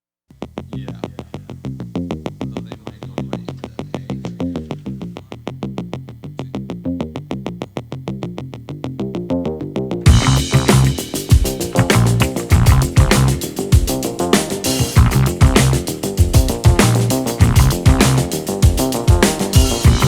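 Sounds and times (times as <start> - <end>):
fast synthesizer pulse: 10.1 - 20.0.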